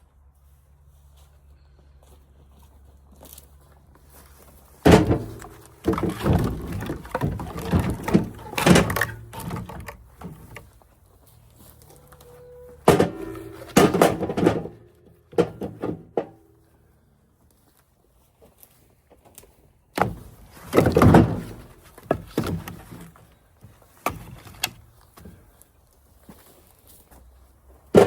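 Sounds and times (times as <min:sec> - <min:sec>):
firewood pieces knocking together: 0:04.8 - 0:10.7, 0:12.9 - 0:16.4, 0:20.0 - 0:23.2.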